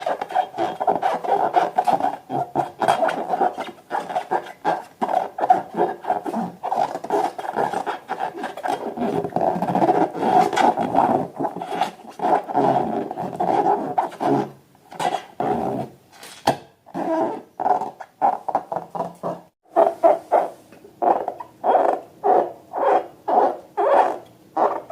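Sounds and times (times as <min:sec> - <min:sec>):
rubber balloons squeaking: 0:00.0 - 0:15.9.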